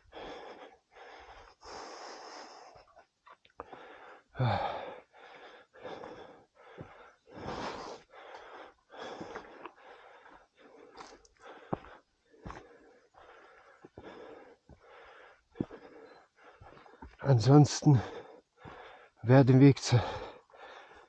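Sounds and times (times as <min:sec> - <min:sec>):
man breathing heavily: 0:00.0 - 0:21.0.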